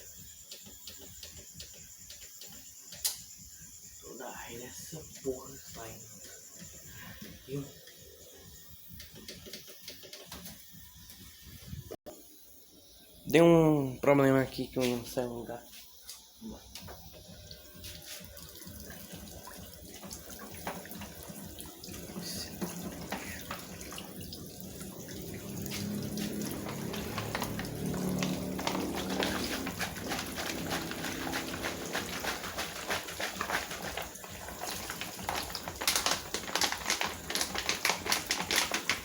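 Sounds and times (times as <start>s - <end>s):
water splashing into washing machine: 17.4s - 39.0s.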